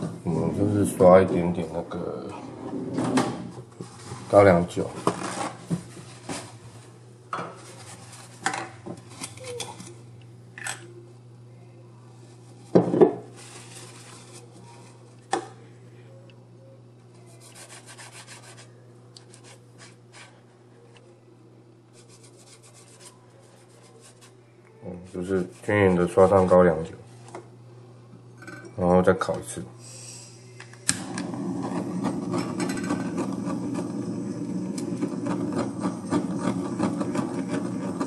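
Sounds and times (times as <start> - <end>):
steady low hum: 0.0 - 38.0
brush stroking: 17.2 - 20.4, 21.9 - 24.4.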